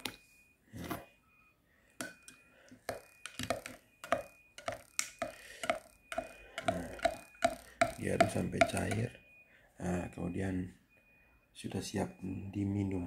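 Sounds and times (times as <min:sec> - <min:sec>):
spoon clinking in a cup: 0:02.0 - 0:09.1.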